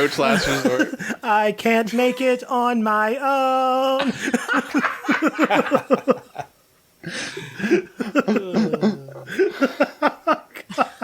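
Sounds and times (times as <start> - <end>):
people laughing and vocalizing: 0.0 - 1.2, 7.2 - 11.0.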